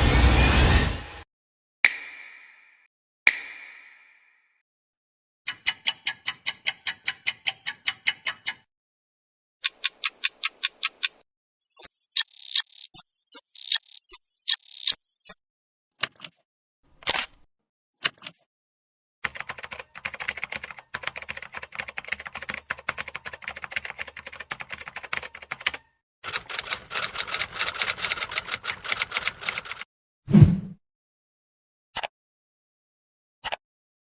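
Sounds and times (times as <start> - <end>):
sharp clicks: 9.6 - 15.4
rapid typing clatter: 19.3 - 29.8.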